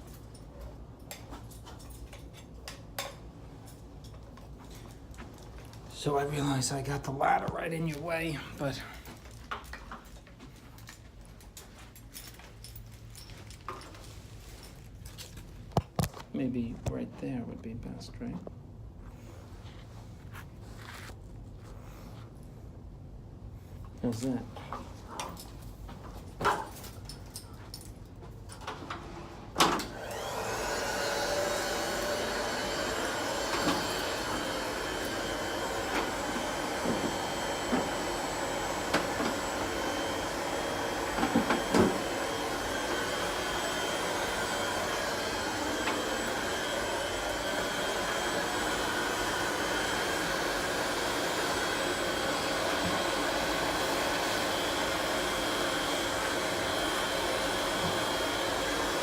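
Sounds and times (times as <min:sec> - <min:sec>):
heat gun blowing air: 0:29.8 - 0:59.0.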